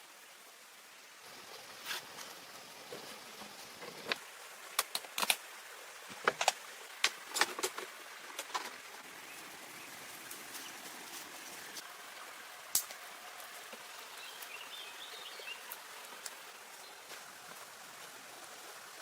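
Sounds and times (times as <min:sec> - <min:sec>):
running water rushing: 0:00.0 - 0:19.0.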